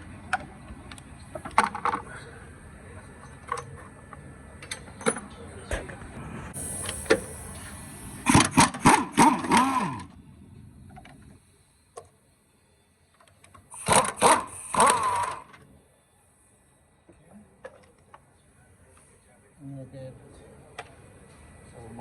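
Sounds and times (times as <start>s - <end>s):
impact wrench hammering: 13.8s - 15.4s.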